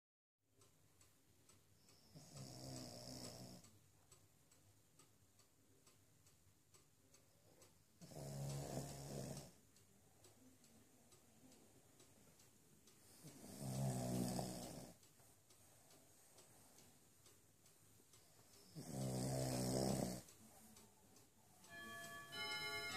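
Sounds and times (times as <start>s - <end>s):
soft rattling snoring: 1.9s - 3.6s, 8.0s - 9.6s, 13.0s - 15.1s, 18.2s - 20.4s.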